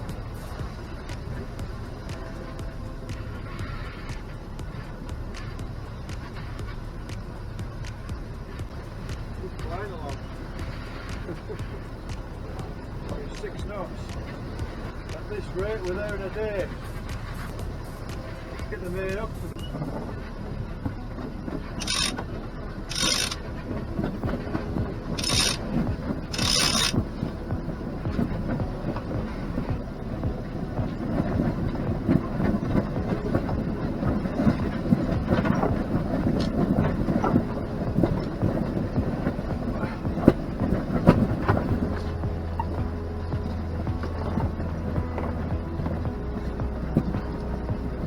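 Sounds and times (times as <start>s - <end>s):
winch clicking and rattling: 21.7s - 22.2s, 22.9s - 24.1s, 25.1s - 29.7s.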